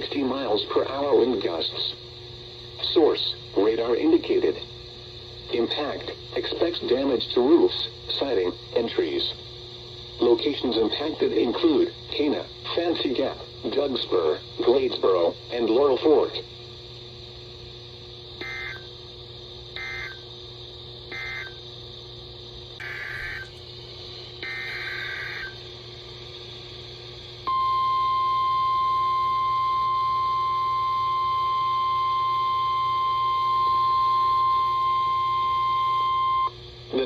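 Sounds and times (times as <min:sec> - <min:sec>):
screeching digital data bursts: 0:18.4 - 0:18.9, 0:19.8 - 0:20.2, 0:21.1 - 0:21.6, 0:22.8 - 0:23.6, 0:24.4 - 0:25.6
steady warning alarm tone: 0:18.4 - 0:19.0, 0:19.7 - 0:20.3, 0:21.1 - 0:21.7, 0:22.8 - 0:23.6, 0:24.4 - 0:25.6, 0:27.4 - 0:36.6.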